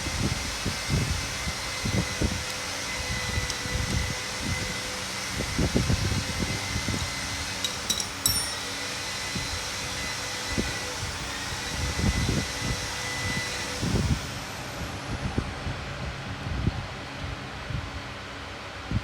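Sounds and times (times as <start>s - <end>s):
steady fan-like hum: 0.0s - 19.0s
dull knocks of tools: 7.6s - 8.6s
metallic clink ringing: 7.6s - 8.8s.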